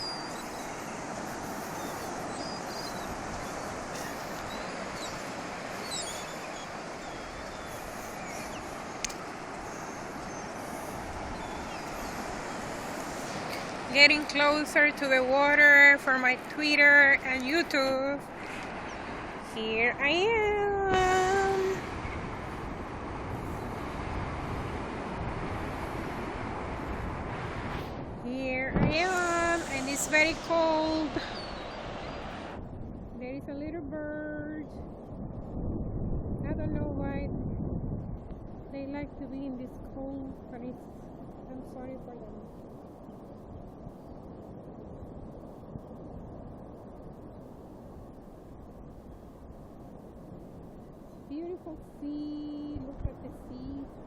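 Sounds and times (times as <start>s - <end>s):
high bird calls chirping: 0.0s - 13.3s, 31.2s - 32.2s
surf: 0.0s - 33.2s
wind at the shore: 0.0s - 54.0s.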